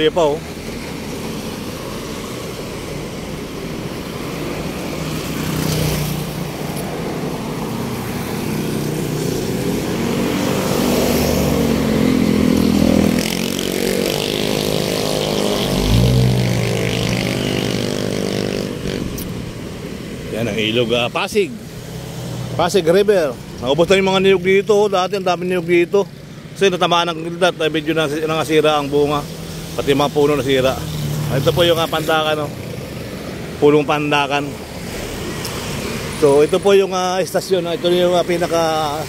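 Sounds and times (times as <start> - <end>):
traffic engines accelerating: 0.0 - 39.0
loud engine rising in pitch: 8.9 - 19.2.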